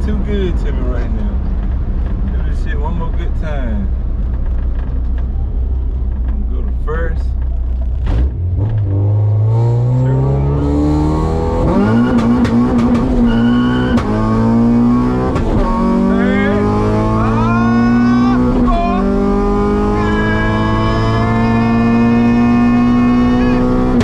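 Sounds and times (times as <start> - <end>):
car engine accelerating hard: 7.2 - 24.0.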